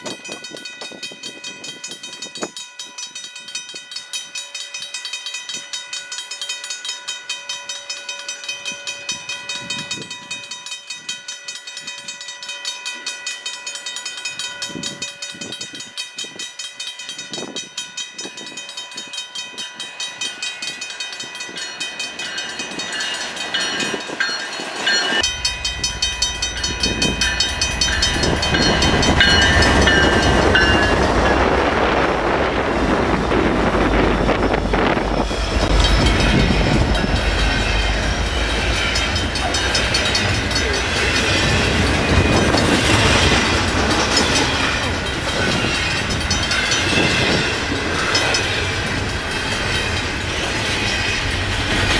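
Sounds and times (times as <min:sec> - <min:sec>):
crossing warning bell ringing: 0:00.0 - 0:51.9
diesel locomotive rumble: 0:24.9 - 0:51.9.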